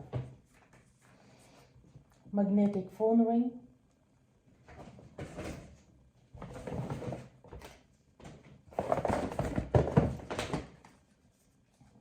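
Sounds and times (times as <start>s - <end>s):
packaging rustling with knocks: 6.4s - 11.0s.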